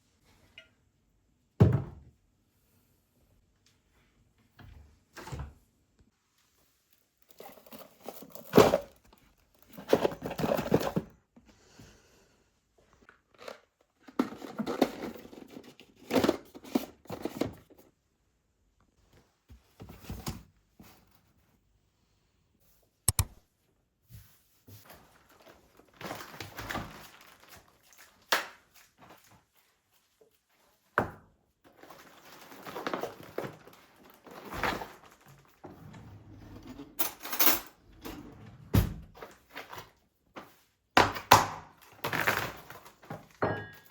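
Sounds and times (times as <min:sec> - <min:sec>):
packaging crinkling and tearing: 0:25.2 - 0:29.1.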